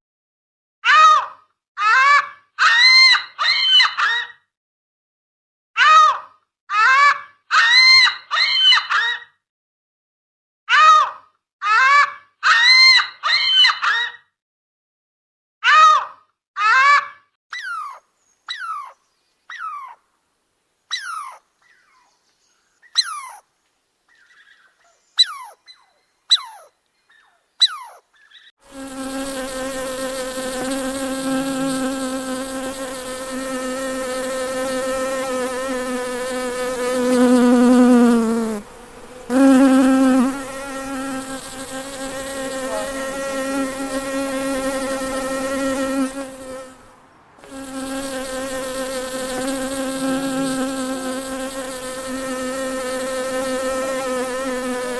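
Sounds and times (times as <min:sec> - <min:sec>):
flying insect buzzing: 0:28.6 - 0:54.9.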